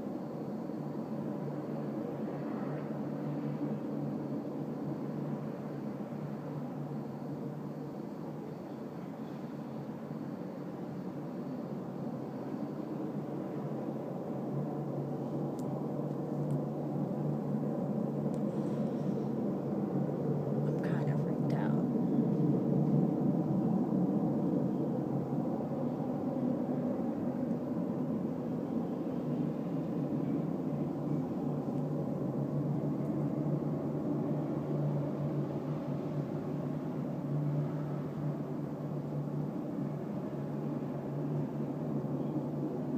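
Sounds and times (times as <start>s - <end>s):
constant hum: 0.0s - 42.9s
deep steady roar: 13.2s - 42.9s.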